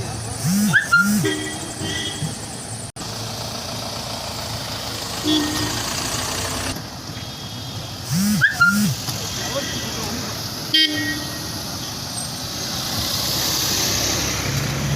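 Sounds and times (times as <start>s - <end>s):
vehicle engine idling: 0.0s - 12.3s
outdoor background noise: 0.0s - 14.9s.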